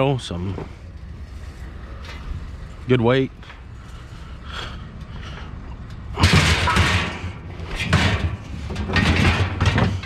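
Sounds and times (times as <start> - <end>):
scrap metal clattering and scraping: 5.1 - 10.0.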